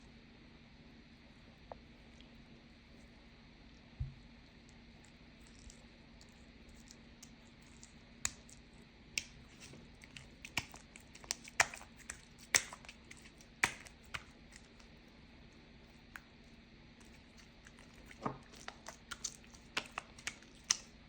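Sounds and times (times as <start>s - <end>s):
slime clicking and popping: 10.1s - 14.9s, 18.5s - 20.9s.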